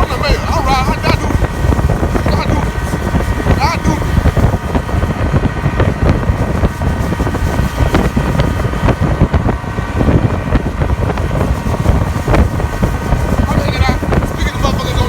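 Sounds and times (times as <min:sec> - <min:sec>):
hull thumping on water: 0:00.0 - 0:15.0
motorboat engine running: 0:00.0 - 0:15.0
wind buffeting microphone: 0:00.0 - 0:15.0.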